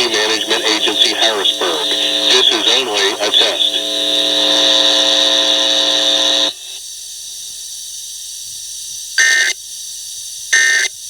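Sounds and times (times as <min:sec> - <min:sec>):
warbling data bursts: 0:00.0 - 0:06.6
loud buzzing tone: 0:00.0 - 0:06.8.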